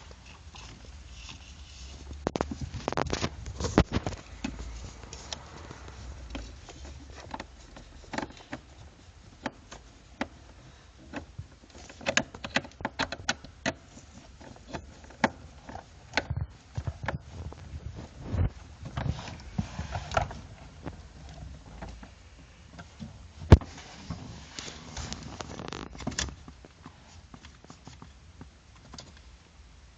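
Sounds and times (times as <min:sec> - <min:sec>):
plastic and metal parts clicking: 0:09.4 - 0:17.6.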